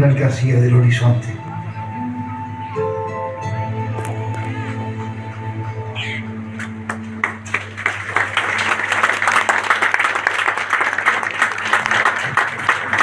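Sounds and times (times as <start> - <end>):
music: 0.0 - 13.0
crowd applauding: 6.0 - 13.0.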